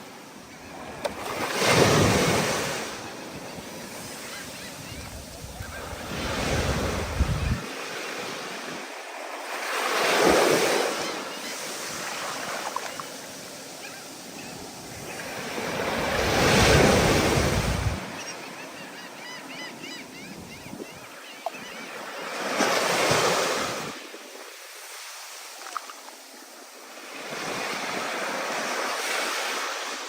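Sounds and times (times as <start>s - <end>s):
ocean waves breaking: 0.0s - 19.3s
wind buffeting microphone: 4.7s - 7.6s, 16.1s - 18.0s.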